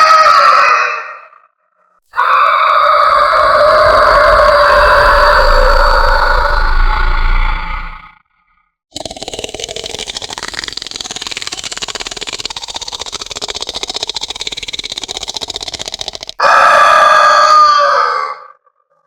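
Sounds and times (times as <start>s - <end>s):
monster shrieking call: 0.0s - 1.5s, 2.2s - 8.1s, 16.4s - 18.6s
pulsing rattling hiss: 3.4s - 8.0s.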